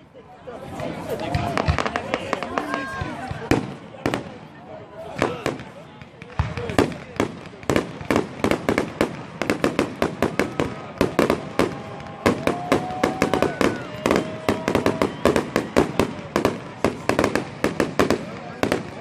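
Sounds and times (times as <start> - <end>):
fireworks bangs and crackles: 0.6 - 19.0
fireworks whistling: 6.4 - 19.0.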